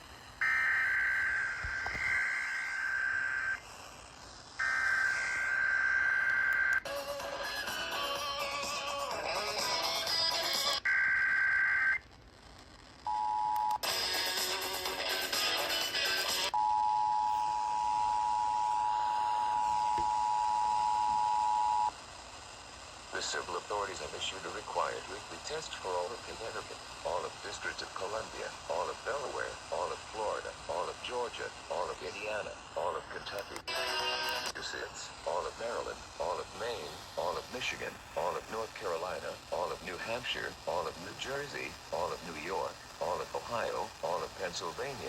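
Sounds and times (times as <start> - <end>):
harsh digital data tone: 0.4 - 8.6, 24.2 - 45.0.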